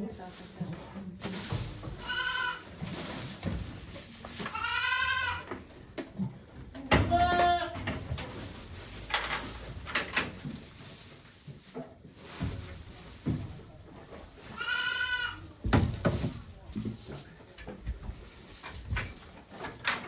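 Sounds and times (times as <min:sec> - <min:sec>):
goat bleating: 0:02.0 - 0:02.6, 0:04.5 - 0:05.5, 0:07.0 - 0:07.8, 0:14.6 - 0:15.4.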